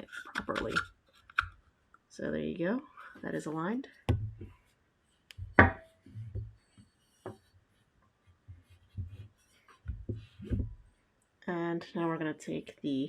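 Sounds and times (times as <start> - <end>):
metal gun parts knocking: 5.6 - 5.9.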